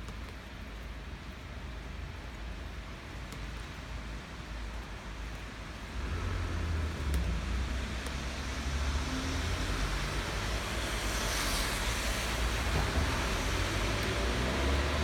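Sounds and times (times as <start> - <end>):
steady rain falling: 0.0 - 15.0
road traffic rumble: 5.4 - 15.0.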